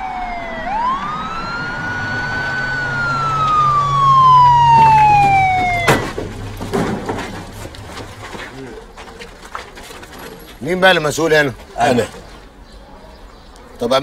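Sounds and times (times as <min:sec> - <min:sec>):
police car siren wailing: 0:00.0 - 0:06.7.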